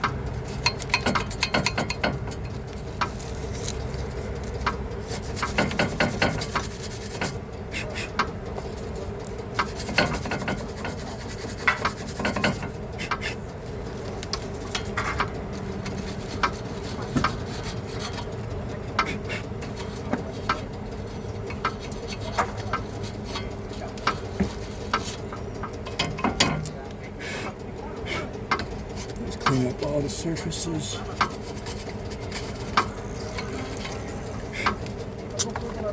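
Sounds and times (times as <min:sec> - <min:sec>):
rasping rubbing on metal: 0:05.0 - 0:08.2, 0:09.6 - 0:13.5, 0:14.8 - 0:18.3, 0:19.0 - 0:25.3, 0:31.0 - 0:34.9.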